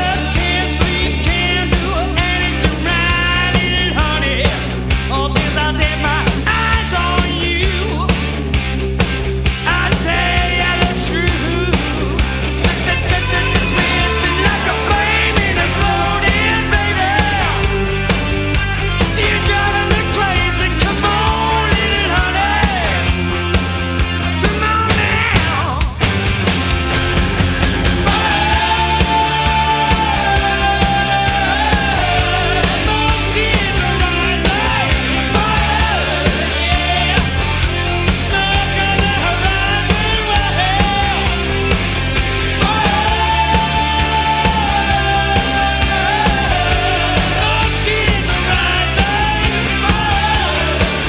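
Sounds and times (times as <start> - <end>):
rock music: 0.0 - 51.0
steady drum beat: 0.0 - 51.0
person singing: 9.7 - 17.9, 19.1 - 23.1, 28.0 - 37.6, 42.6 - 51.0.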